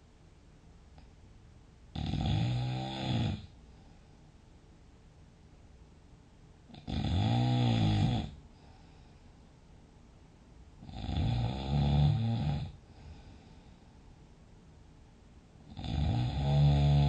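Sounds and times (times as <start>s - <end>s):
person snoring loudly: 2.0s - 3.5s, 6.7s - 8.4s, 10.8s - 12.8s, 15.7s - 17.0s.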